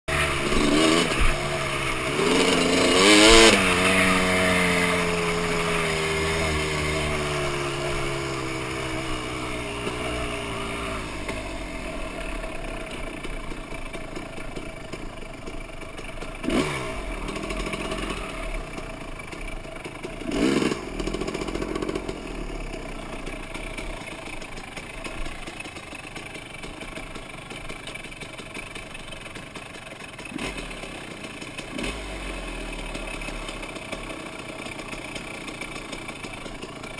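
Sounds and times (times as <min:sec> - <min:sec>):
engine revving: 0:00.1 - 0:14.0, 0:16.4 - 0:19.4, 0:20.0 - 0:24.3, 0:30.3 - 0:36.2
strange engine noise: 0:00.1 - 0:36.9.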